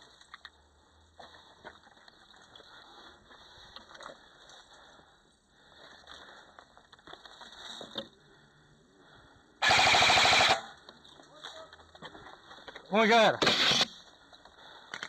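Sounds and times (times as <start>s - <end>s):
airsoft rifle full-auto burst: 9.6s - 10.8s, 13.2s - 14.0s.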